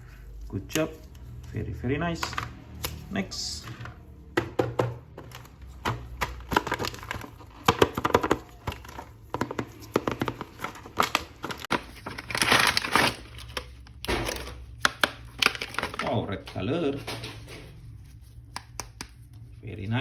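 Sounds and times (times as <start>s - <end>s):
plastic packaging crinkling: 5.1s - 16.9s.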